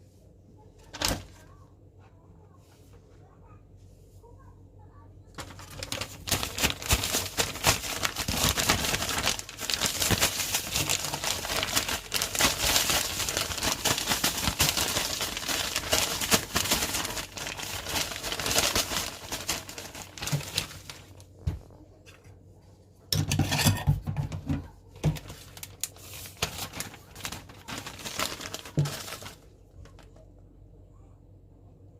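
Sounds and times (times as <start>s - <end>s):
plastic crinkling and rustling: 0.8s - 1.6s, 5.3s - 22.4s, 23.1s - 30.4s.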